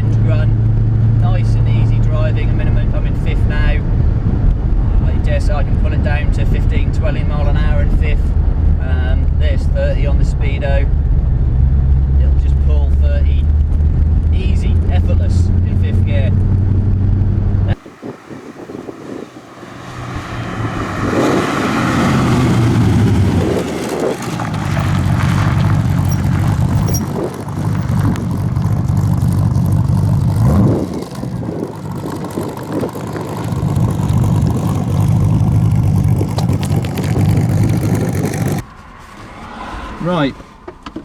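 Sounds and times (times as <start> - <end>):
car engine under load: 10.9 - 38.8.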